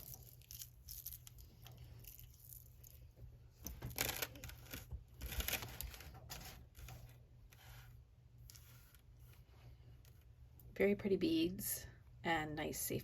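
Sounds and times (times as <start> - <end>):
bead necklace rustling and clicking: 0.0 - 6.9
low steady hum: 0.0 - 13.0.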